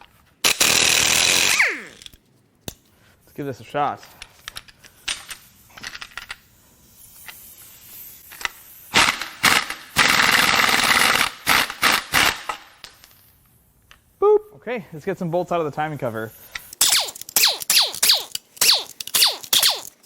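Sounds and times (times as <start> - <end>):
impact wrench hammering: 16.8 - 20.0.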